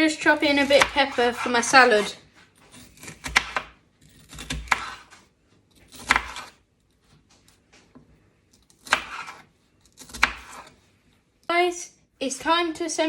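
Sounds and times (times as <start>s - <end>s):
knife chopping on cutting board: 0.5s - 2.0s, 3.0s - 5.2s, 6.0s - 6.6s, 8.8s - 10.7s.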